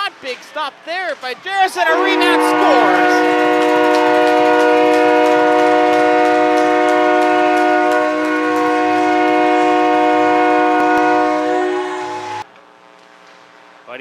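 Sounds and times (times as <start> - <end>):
goal horn chord: 1.6 - 12.4.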